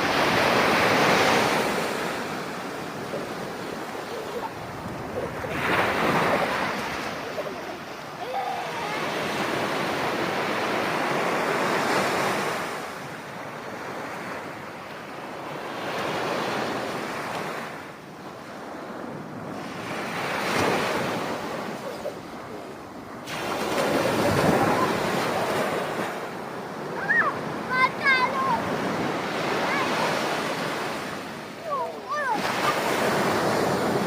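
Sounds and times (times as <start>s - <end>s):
wind on microphone: 0.0s - 8.2s
ocean surf rushing: 0.0s - 34.0s.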